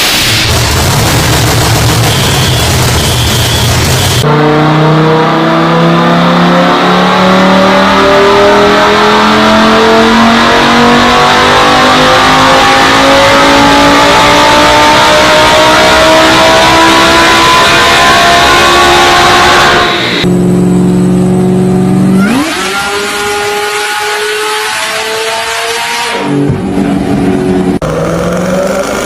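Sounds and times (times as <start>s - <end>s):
engine revving under load: 0.5s - 29.0s.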